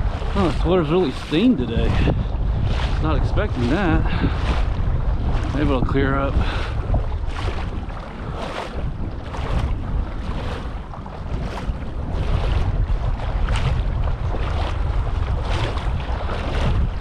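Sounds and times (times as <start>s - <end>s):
water splashing and lapping: 0.0s - 17.0s
wind buffeting microphone: 0.0s - 17.0s.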